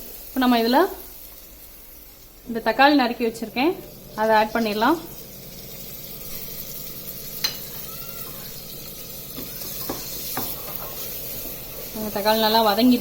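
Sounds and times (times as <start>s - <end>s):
onions sizzling in hot oil: 0.0s - 13.0s
spoon knocking on pot: 7.4s - 7.7s, 9.3s - 11.0s.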